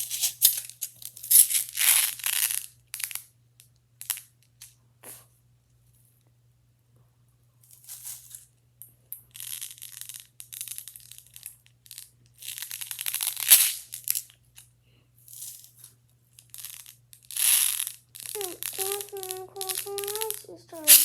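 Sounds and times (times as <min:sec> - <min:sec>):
plastic pop tubes crackling: 0:17.7 - 0:21.0.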